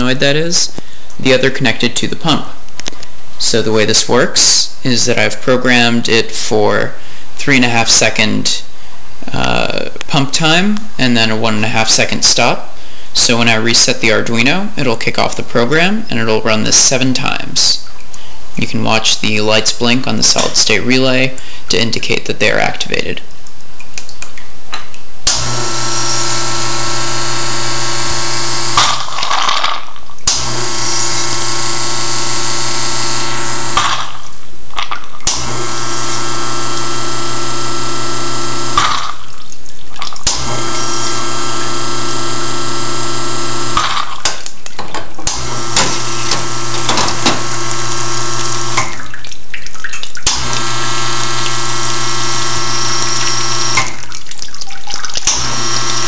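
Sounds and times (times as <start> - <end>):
espresso machine pump humming: 25.3 - 28.8, 30.3 - 33.9, 35.3 - 38.9, 40.3 - 43.8, 45.3 - 48.9, 50.3 - 54.0, 55.3 - 56.0.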